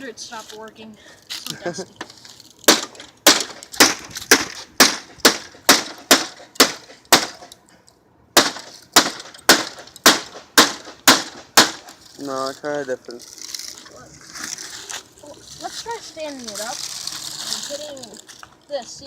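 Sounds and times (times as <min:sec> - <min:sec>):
blows smashing air conditioner: 0:02.7 - 0:07.4.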